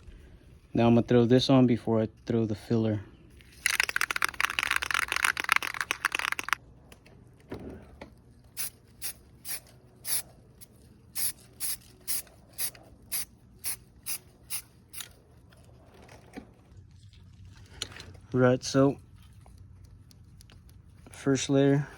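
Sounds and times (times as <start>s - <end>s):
aerosol can spraying: 8.6s - 15.1s.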